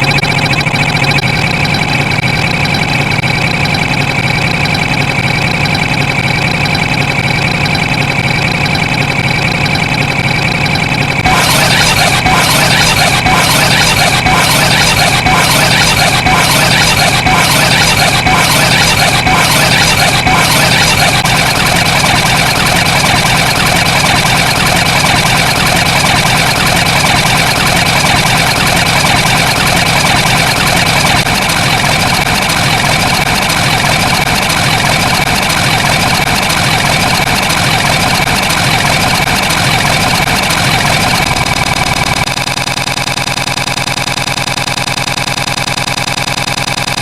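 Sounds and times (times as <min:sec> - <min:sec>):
engine-like running noise: 0:00.0 - 0:47.0
high whine: 0:10.0 - 0:34.5.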